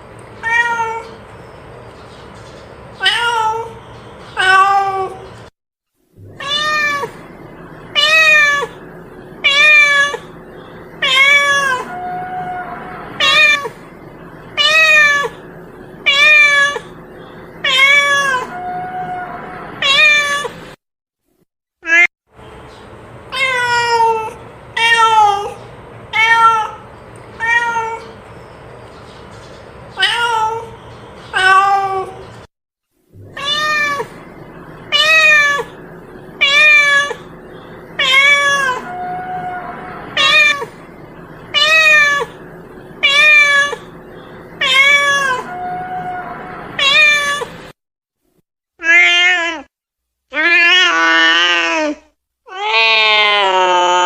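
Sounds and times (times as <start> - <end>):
cat meowing: 0.4 - 1.2, 3.0 - 3.8, 4.4 - 5.3, 6.2 - 7.2, 7.9 - 8.8, 9.4 - 10.4, 11.0 - 13.8, 14.6 - 15.4, 16.0 - 17.0, 17.6 - 20.6, 21.8 - 22.1, 23.3 - 26.8, 27.4 - 28.2, 30.0 - 32.2, 33.2 - 34.2, 34.9 - 35.8, 36.4 - 37.3, 38.0 - 40.8, 41.5 - 42.4, 43.0 - 44.0, 44.6 - 47.6, 48.8 - 49.7, 50.3 - 54.0.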